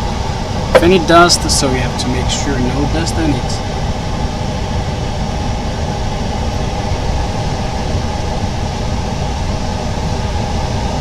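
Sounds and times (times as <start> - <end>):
faint hum: 0.0 - 3.8
machine drone with low rumble: 0.0 - 11.0.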